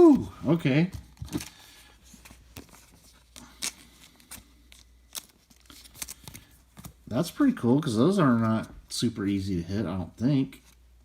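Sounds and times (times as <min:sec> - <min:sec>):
cards clicking and rustling: 0:00.8 - 0:07.4.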